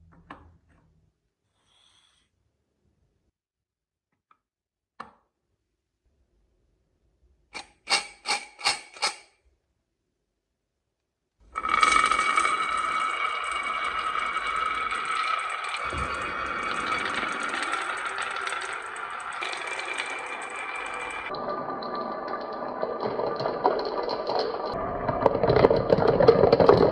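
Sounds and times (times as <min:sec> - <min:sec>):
steady ringing tone: 0:11.6 - 0:25.0
marbles rolling down a track: 0:11.6 - 0:26.9.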